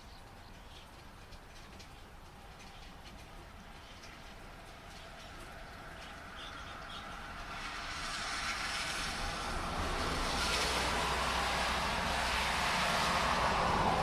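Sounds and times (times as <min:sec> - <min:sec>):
low engine rumble: 0:00.0 - 0:14.0
rain hiss: 0:00.3 - 0:14.0
tyre hiss on wet road: 0:07.1 - 0:14.0.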